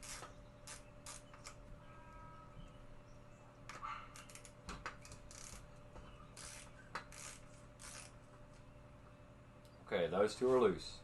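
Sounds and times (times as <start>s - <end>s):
short scraping rasps: 6.3s - 8.2s.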